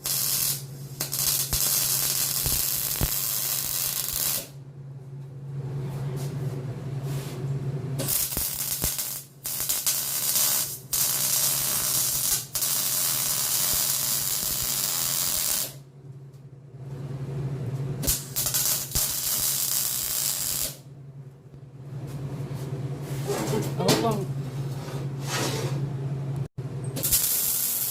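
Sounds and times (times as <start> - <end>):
arc welding crackling hiss: 0.0 - 4.6, 8.0 - 15.8, 18.0 - 20.8, 27.0 - 27.9
low steady hum: 0.0 - 27.0.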